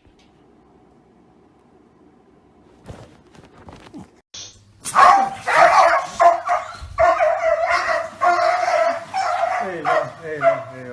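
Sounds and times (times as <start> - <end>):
dog barking loudly: 4.8 - 10.9.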